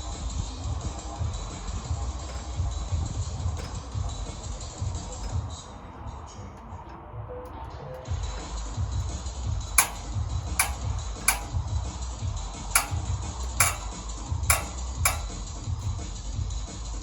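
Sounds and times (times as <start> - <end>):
sharp clicks: 6.6 - 12.0, 12.8 - 16.0.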